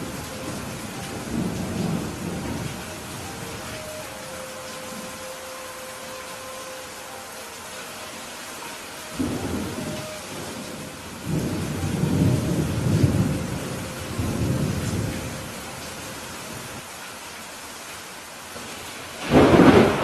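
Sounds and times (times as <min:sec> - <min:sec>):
thunder rumbling: 0:00.0 - 0:05.2, 0:09.1 - 0:15.9, 0:19.1 - 0:20.0
steady rain: 0:00.0 - 0:20.0.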